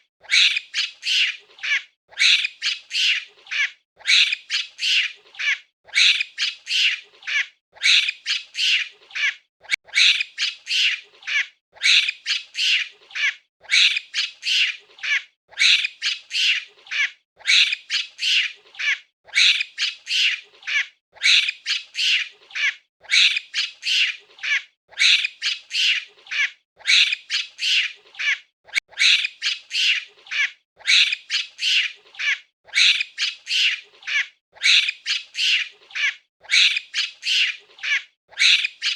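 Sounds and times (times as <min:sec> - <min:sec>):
monkey chattering squeals: 0:00.2 - 0:38.9.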